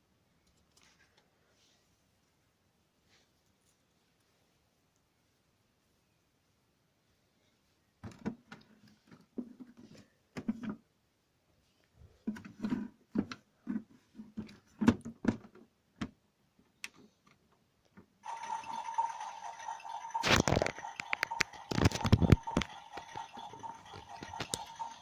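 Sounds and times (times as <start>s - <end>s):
toy clicks and knocks: 18.2s - 25.0s.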